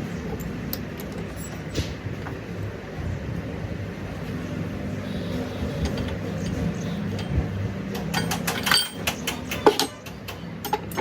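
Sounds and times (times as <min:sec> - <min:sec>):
car engine humming: 0:00.0 - 0:11.0
metallic clinks and knocks: 0:05.8 - 0:11.0.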